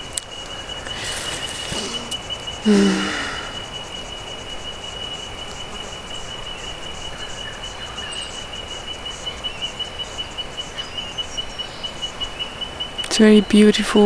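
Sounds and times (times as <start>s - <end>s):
insect trilling: 0.5s - 3.8s.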